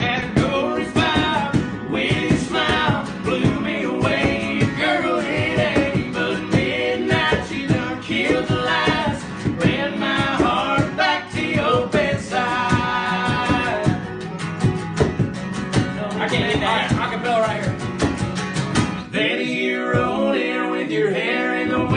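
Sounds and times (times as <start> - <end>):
man singing country song: 0.0 - 14.2, 19.0 - 21.9
strummed acoustic guitar: 0.0 - 21.9.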